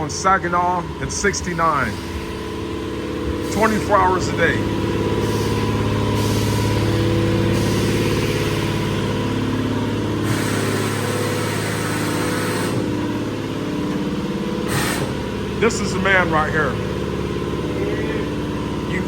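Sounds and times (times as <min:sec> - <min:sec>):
engine idling: 0:00.0 - 0:19.0
hiss: 0:05.2 - 0:06.8.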